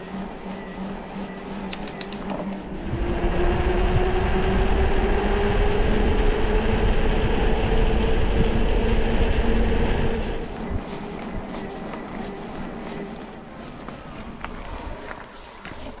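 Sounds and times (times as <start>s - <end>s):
electric motor whine: 0.0s - 13.4s
rumble of tyres and wind: 0.0s - 16.0s
quick clicks: 1.7s - 2.4s.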